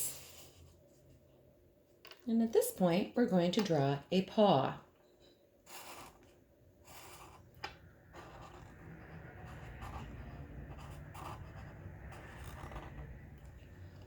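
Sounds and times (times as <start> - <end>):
marker scratching on paper: 5.7 - 6.2, 6.8 - 7.5, 8.1 - 14.0.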